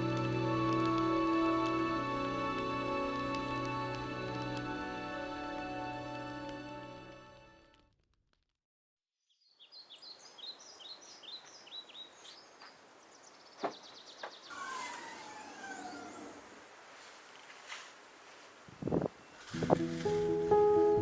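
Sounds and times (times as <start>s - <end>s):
faint outdoor background: 0.0s - 7.9s, 9.2s - 21.0s.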